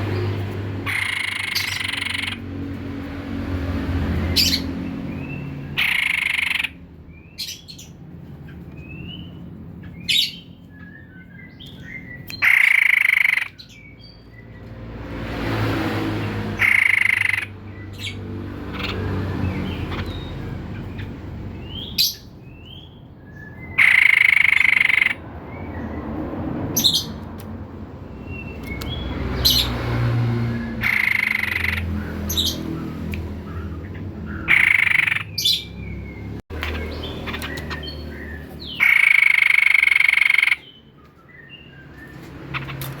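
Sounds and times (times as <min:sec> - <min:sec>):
bird harsh chatter: 0:00.0 - 0:02.4, 0:04.2 - 0:13.9, 0:16.5 - 0:25.2, 0:30.6 - 0:40.9.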